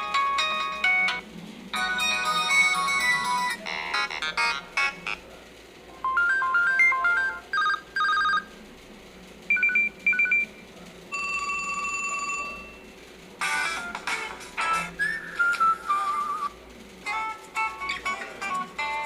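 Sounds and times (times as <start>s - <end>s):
phone ringtones and alert tones: 6.0s - 8.4s.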